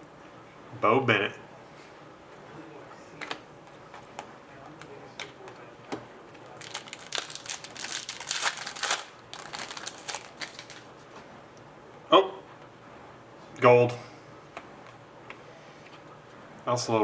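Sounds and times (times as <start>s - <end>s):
wrapper crinkling: 6.4s - 10.9s.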